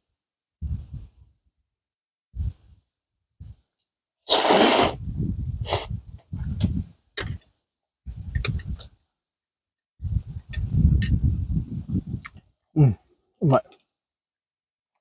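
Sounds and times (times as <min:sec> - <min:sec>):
person slurping noodles: 0:04.3 - 0:05.0, 0:05.6 - 0:05.9.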